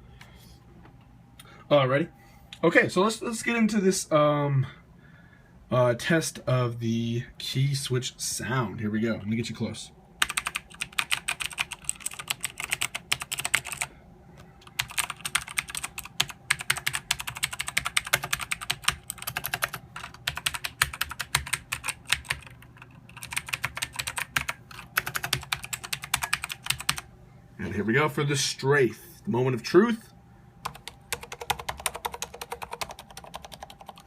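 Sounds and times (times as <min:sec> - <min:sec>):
mechanical keyboard typing: 0:10.2 - 0:13.9, 0:14.6 - 0:27.0, 0:30.6 - 0:34.0.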